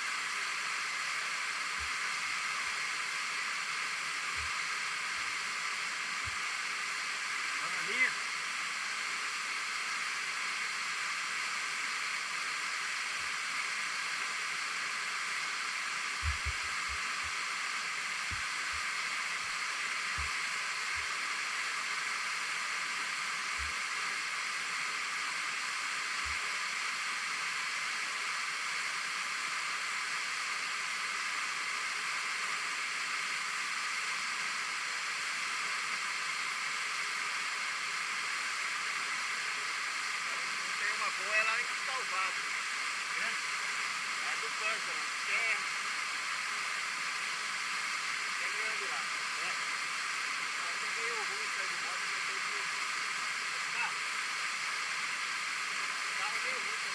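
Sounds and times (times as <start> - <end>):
waterfall rushing: 38.4 - 56.9.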